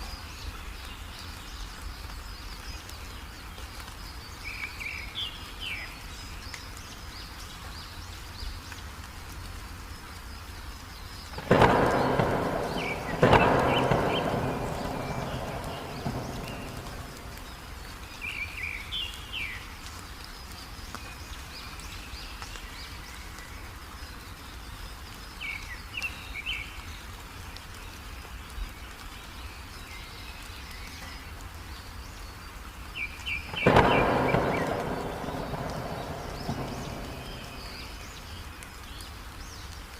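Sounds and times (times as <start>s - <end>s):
songbird chirping: 0.0s - 9.1s, 10.0s - 39.9s
heavy rain hiss: 0.0s - 39.9s
thunder rumbling: 11.3s - 18.4s, 33.5s - 38.6s.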